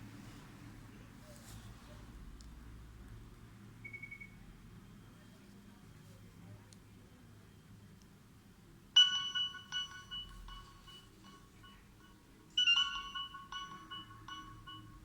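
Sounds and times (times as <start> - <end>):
electronic phone ringtone melody: 9.0 - 15.0.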